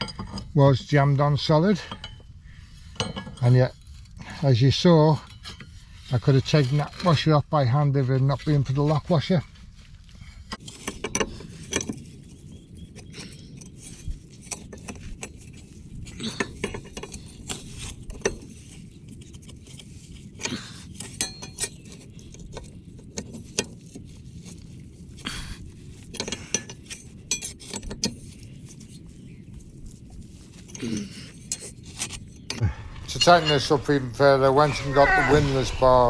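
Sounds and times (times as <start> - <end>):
hand tools clinking on metal: 32.7 - 36.0.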